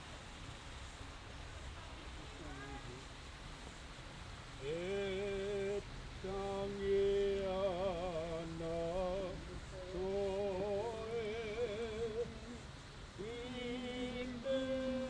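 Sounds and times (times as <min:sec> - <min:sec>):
person singing with vibrato: 0:04.6 - 0:15.0.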